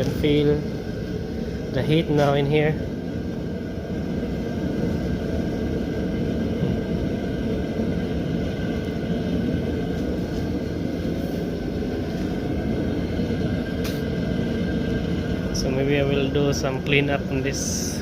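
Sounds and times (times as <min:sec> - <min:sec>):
propane heater rumbling: 0:00.0 - 0:18.0.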